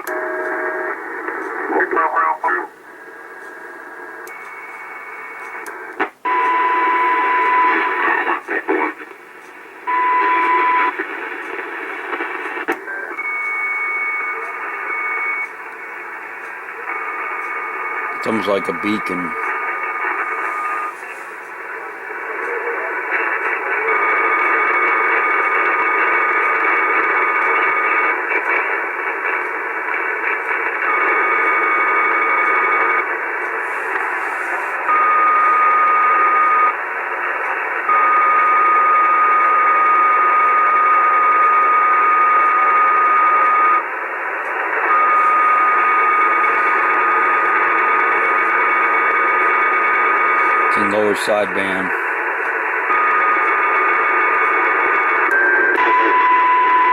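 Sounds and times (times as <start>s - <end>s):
radio static: 0.0s - 56.9s
steady interference tones: 14.5s - 23.9s, 43.8s - 56.9s.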